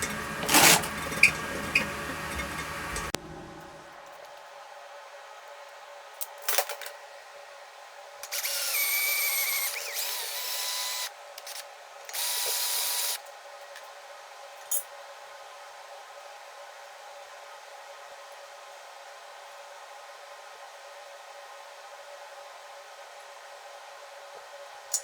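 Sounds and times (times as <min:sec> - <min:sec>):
electric power drill: 0:08.3 - 0:13.2.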